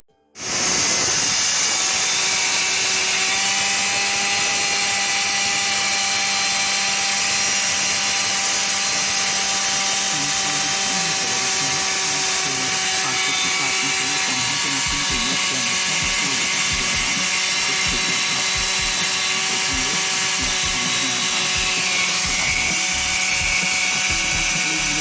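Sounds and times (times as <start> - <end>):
concrete saw whining: 0.4 - 25.0
faint voices: 10.1 - 22.8.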